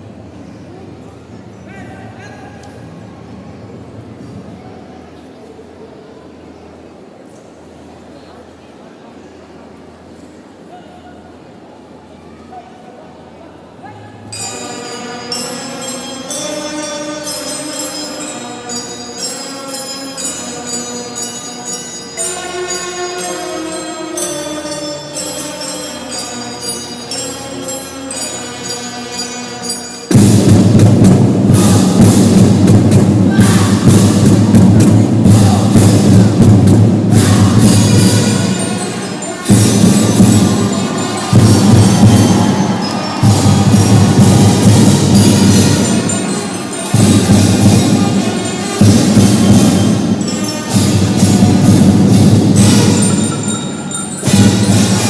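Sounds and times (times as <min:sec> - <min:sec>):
marching band playing: 0:21.9 - 0:55.0
drums: 0:30.1 - 0:55.0.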